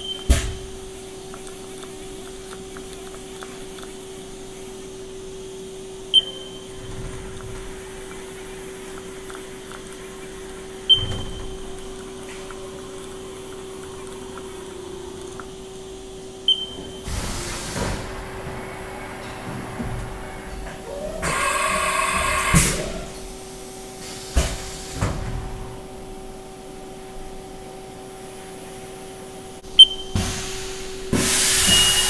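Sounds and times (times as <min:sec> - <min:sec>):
machining center humming: 0:04.7 - 0:24.2.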